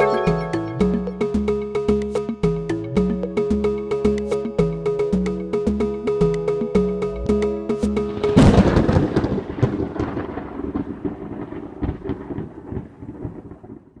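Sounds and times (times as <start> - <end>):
music: 0.0 - 9.0
thunderclap with crackling rumble: 8.1 - 14.0.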